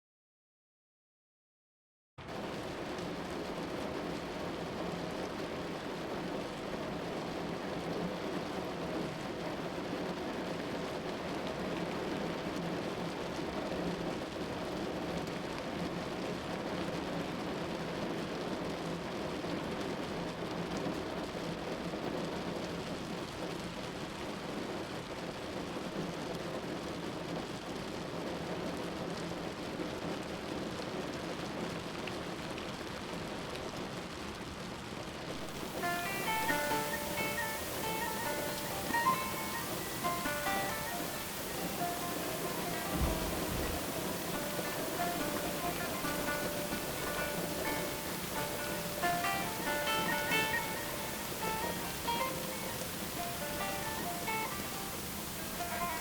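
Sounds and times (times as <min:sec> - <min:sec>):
steady rain: 0:02.2 - 0:56.0
car driving on wet road: 0:35.4 - 0:56.0.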